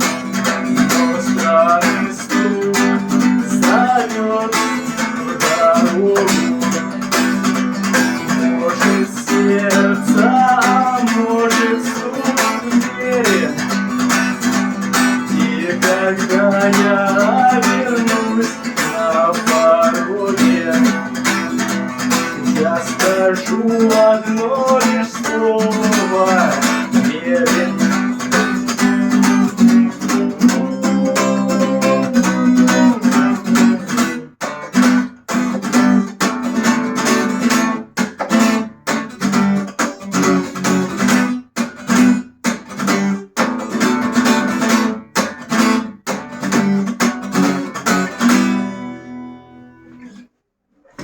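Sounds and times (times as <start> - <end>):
acoustic guitar strumming: 0.0 - 50.3.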